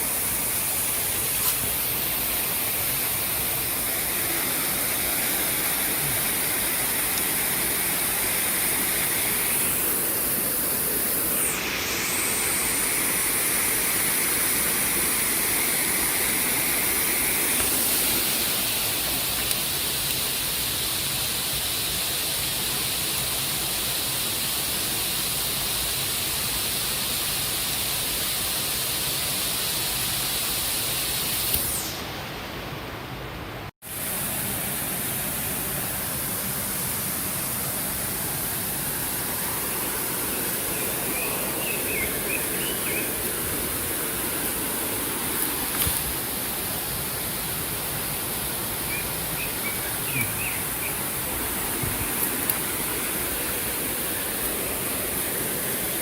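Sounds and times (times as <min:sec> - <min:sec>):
water rushing: 0:00.0 - 0:56.0.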